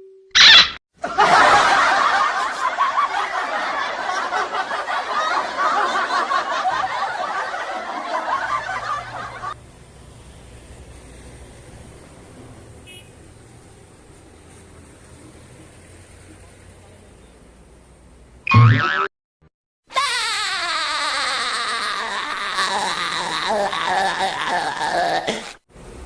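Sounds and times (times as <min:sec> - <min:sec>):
crowd laughing: 0:01.0 - 0:09.6, 0:21.6 - 0:25.6.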